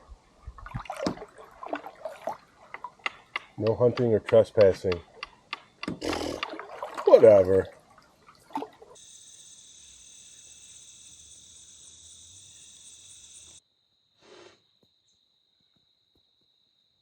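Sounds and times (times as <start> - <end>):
insects trilling: 8.5 - 13.6.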